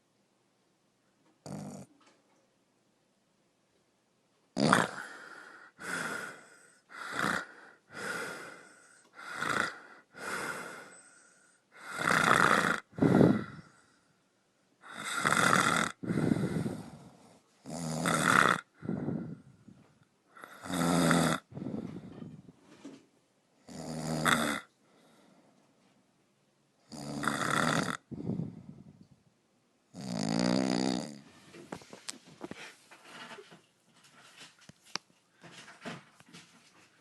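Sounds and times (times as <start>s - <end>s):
short rasping snores: 1.5s - 1.9s, 4.6s - 5.2s, 5.8s - 11.2s, 11.8s - 13.8s, 14.8s - 19.4s, 20.4s - 22.2s, 23.6s - 24.7s, 26.9s - 28.6s, 30.0s - 31.2s.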